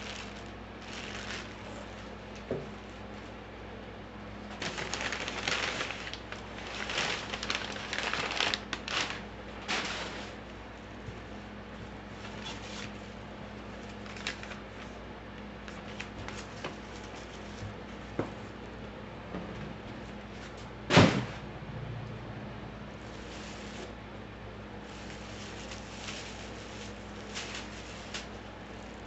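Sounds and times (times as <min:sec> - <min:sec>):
packaging rustling and crinkling: 0:00.0 - 0:03.0, 0:04.5 - 0:10.4, 0:12.1 - 0:15.0, 0:15.6 - 0:17.6, 0:23.0 - 0:24.0, 0:24.8 - 0:29.0.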